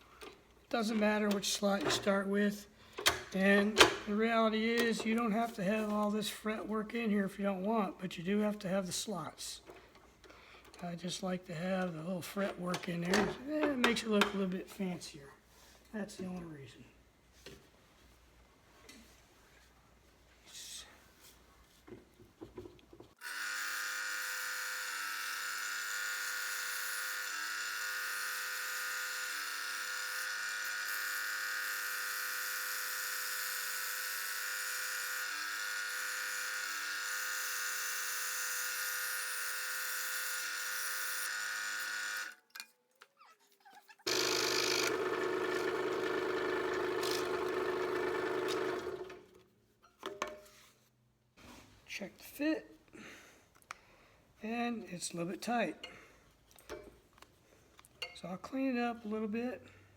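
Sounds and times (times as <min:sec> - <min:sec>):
scroll saw cutting wood: 0:23.2 - 0:42.4, 0:44.0 - 0:49.3.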